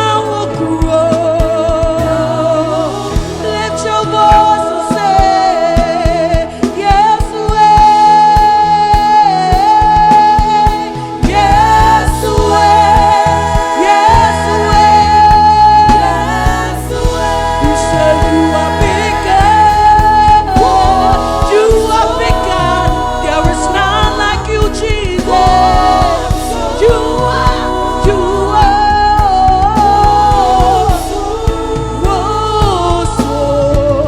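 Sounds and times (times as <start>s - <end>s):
instrumental accompaniment with beat: 0.0s - 34.0s
voices singing gospel: 0.0s - 34.0s.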